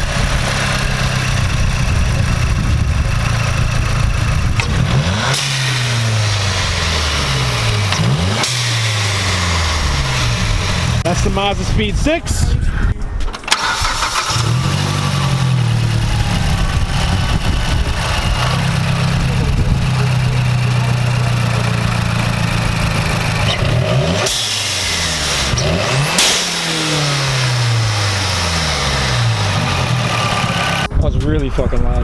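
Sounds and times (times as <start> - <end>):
car engine revving: 0.0 - 11.8, 13.4 - 30.9
blow-off valve whoosh: 24.2 - 29.8.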